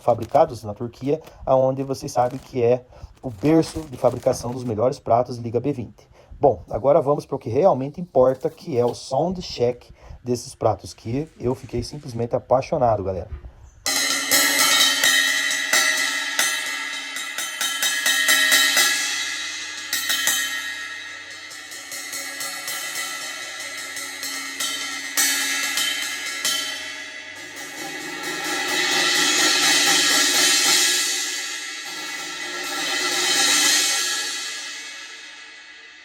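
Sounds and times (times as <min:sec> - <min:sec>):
crash cymbals ringing: 0:13.9 - 0:36.0.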